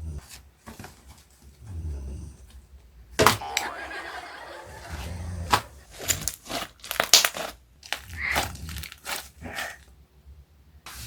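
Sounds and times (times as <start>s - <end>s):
plastic packaging crinkling: 5.5s - 9.8s.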